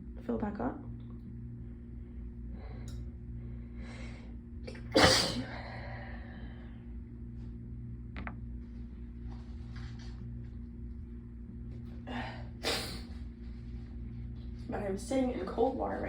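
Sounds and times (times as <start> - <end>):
air-conditioner hum: 0.0 - 16.0
woman sneezing: 4.7 - 5.6, 12.6 - 13.1.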